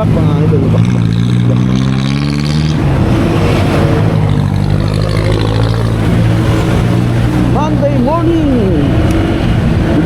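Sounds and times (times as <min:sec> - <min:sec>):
wind noise on microphone: 0:00.0 - 0:10.0
motorcycle engine running: 0:04.0 - 0:09.2.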